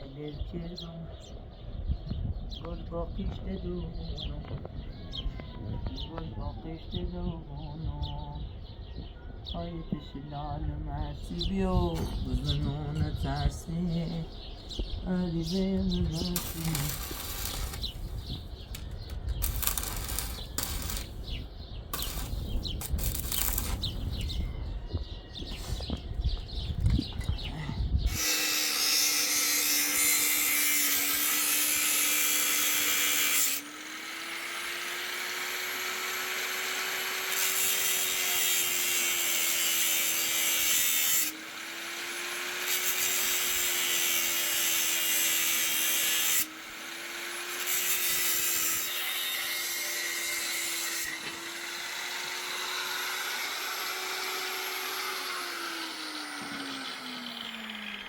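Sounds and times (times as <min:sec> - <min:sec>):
angle grinder grinding metal: 0:11.6 - 0:24.4, 0:28.1 - 0:58.0.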